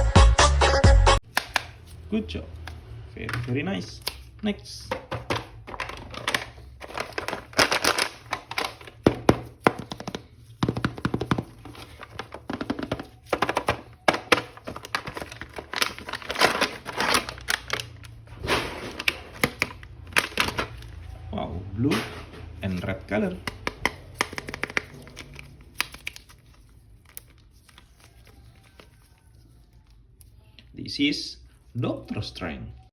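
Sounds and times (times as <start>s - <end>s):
packaging crinkling: 5.3s - 21.2s, 23.3s - 30.4s.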